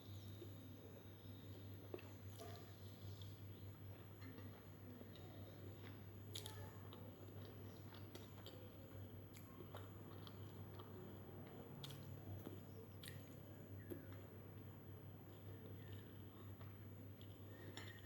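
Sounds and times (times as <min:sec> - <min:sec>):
faint low hum: 0:00.0 - 0:18.0
person chewing: 0:07.3 - 0:08.7, 0:09.3 - 0:11.0, 0:11.8 - 0:14.1.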